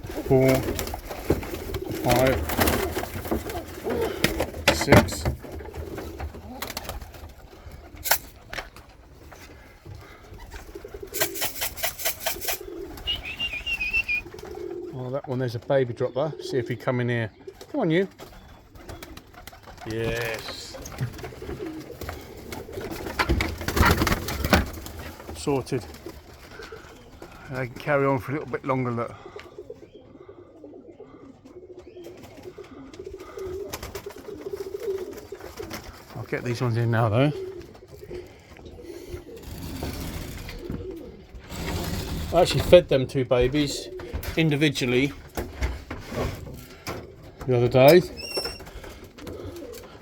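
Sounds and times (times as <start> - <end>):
pigeons cooing: 0.0 - 50.0.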